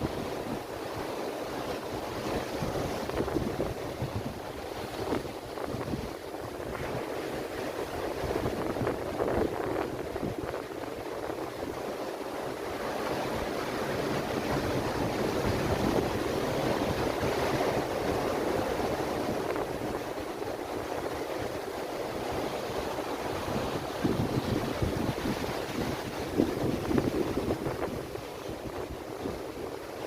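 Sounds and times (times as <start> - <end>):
waves breaking on beach: 0.0 - 30.0
wind buffeting microphone: 0.0 - 30.0.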